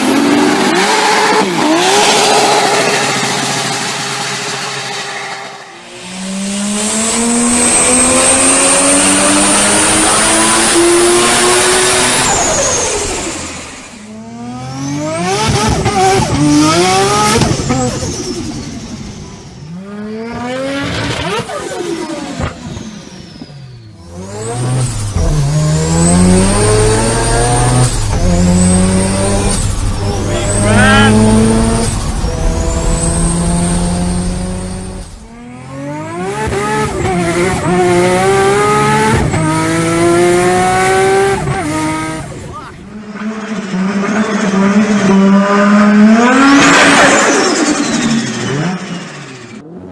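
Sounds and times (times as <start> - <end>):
car engine revving through gears: 0.0 - 49.9.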